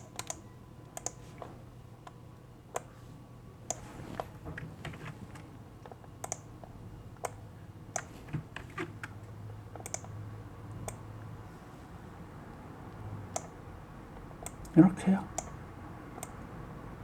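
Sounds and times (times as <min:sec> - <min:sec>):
faint low hum: 0:00.0 - 0:17.0
mouse and keyboard clicks: 0:01.0 - 0:01.5, 0:05.8 - 0:06.5, 0:09.8 - 0:10.2.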